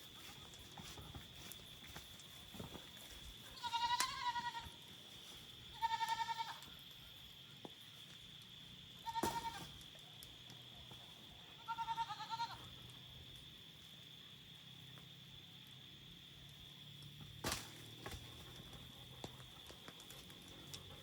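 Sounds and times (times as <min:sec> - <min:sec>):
crickets trilling: 0:00.0 - 0:21.0
goats bleating: 0:03.5 - 0:04.8, 0:05.7 - 0:06.7, 0:11.6 - 0:12.6.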